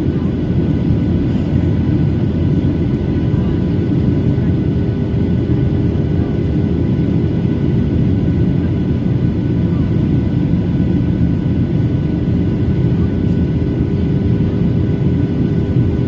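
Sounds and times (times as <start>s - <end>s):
airflow and jet engine roar: 0.0s - 16.0s.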